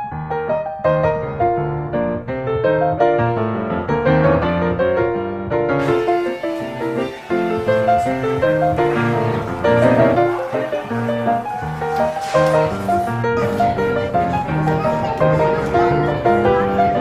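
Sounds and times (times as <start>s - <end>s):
calm piano music: 0.0s - 17.0s.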